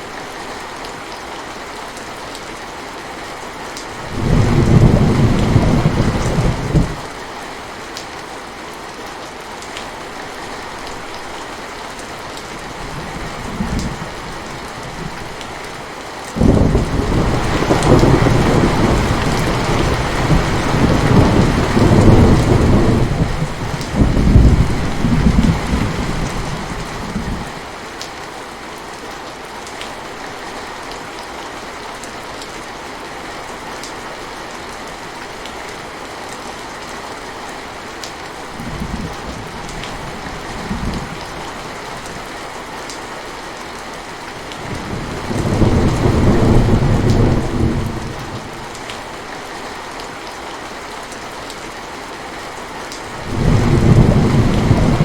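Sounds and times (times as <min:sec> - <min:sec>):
steady rain falling: 0:00.0 - 0:55.0
thunder rumbling: 0:04.0 - 0:07.1, 0:16.4 - 0:27.5, 0:44.6 - 0:48.5, 0:53.2 - 0:55.0.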